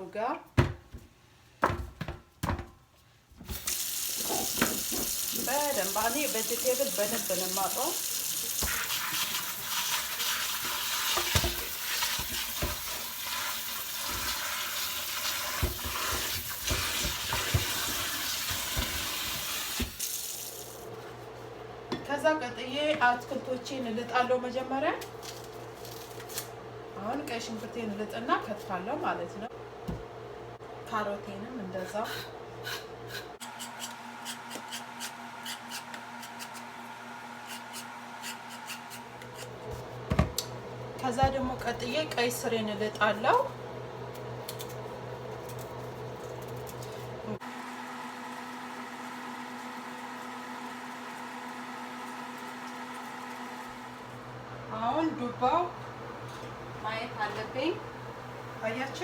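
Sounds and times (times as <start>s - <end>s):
kitchen tap running: 3.4s - 20.9s.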